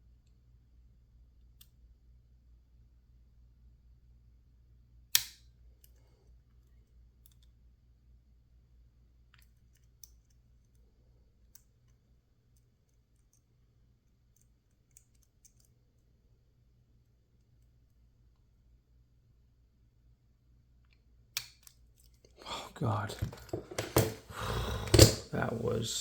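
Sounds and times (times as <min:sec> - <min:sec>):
lock picks clicking in padlock: 0:22.9 - 0:25.2.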